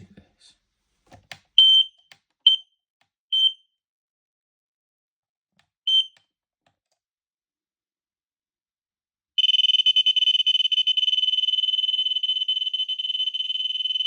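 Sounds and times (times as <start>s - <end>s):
alarm high-pitched beeps: 9.4s - 14.0s.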